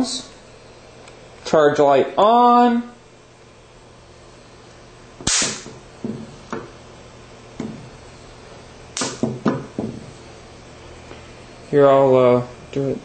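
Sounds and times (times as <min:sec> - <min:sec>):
electric spark snaps: 0:05.2 - 0:05.9, 0:08.9 - 0:09.2.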